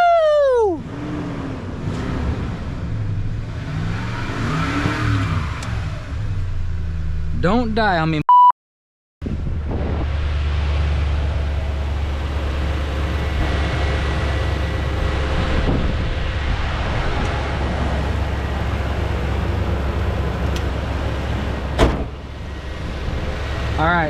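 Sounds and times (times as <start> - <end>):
car engine idling: 9.6 - 24.0.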